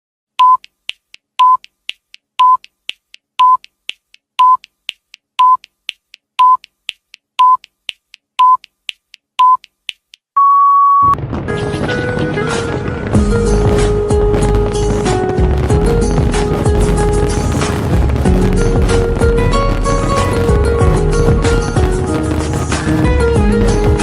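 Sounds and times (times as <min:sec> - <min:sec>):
timer high beeps: 0:00.4 - 0:00.6, 0:04.4 - 0:04.6, 0:05.4 - 0:05.6, 0:06.4 - 0:06.6, 0:07.4 - 0:07.6, 0:08.4 - 0:08.6, 0:09.4 - 0:09.6, 0:10.4 - 0:11.2
faint timer ticks: 0:00.4 - 0:10.2
long timer beep: 0:10.4 - 0:11.2.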